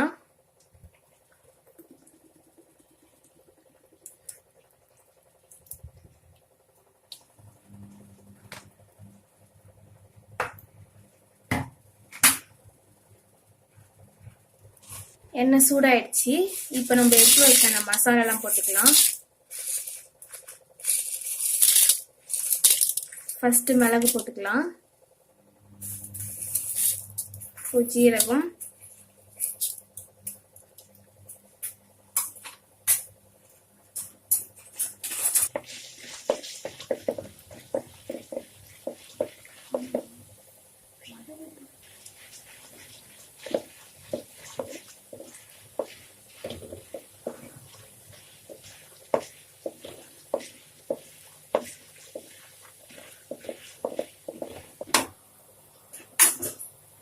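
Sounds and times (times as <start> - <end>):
faint low hum: 0.0 - 18.7
spices crackling in hot oil: 0.5 - 7.4, 16.2 - 24.4, 25.8 - 56.0.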